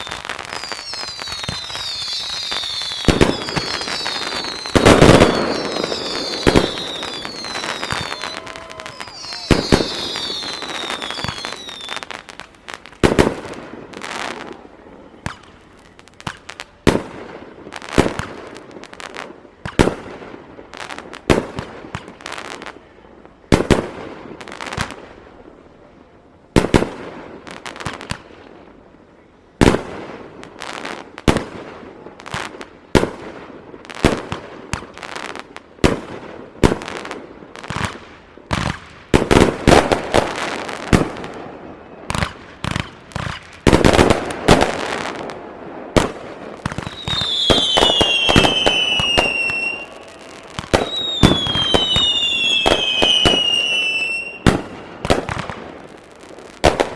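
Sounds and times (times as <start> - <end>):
fireworks bangs: 0.0 - 22.9, 26.5 - 28.5, 29.6 - 56.9
whistling firework: 0.0 - 25.2, 29.2 - 56.9.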